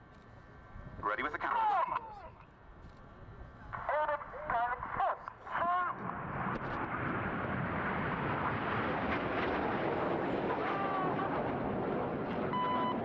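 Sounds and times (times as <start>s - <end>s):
jets flying past: 6.0s - 13.0s.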